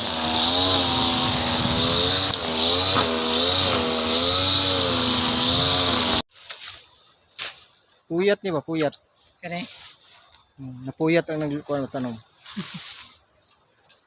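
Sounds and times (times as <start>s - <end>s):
small petrol engine running: 0.0s - 6.2s.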